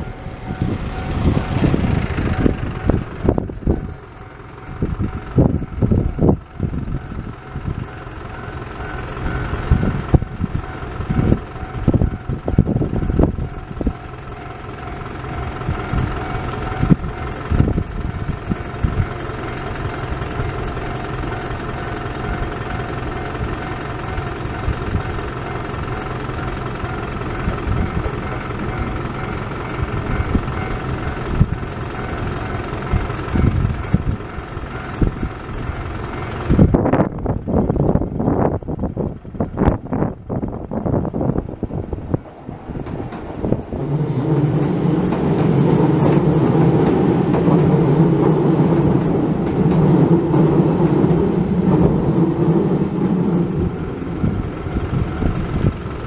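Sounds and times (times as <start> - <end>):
level crossing bell ringing: 0.0 - 6.7, 7.4 - 36.5
wind buffeting microphone: 0.0 - 8.1, 9.1 - 14.1, 15.0 - 21.0, 27.2 - 56.0
train passing: 0.0 - 56.0.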